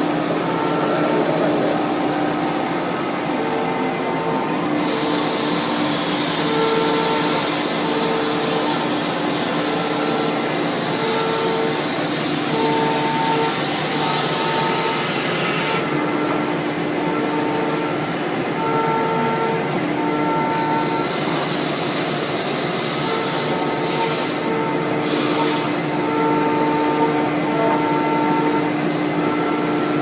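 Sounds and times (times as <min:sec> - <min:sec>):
lathe machining hiss: 0:00.0 - 0:30.0.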